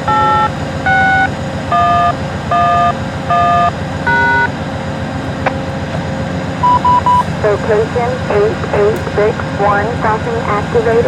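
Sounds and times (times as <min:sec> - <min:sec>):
touch-tone beeps over radio: 0:00.0 - 0:04.5, 0:06.6 - 0:11.0.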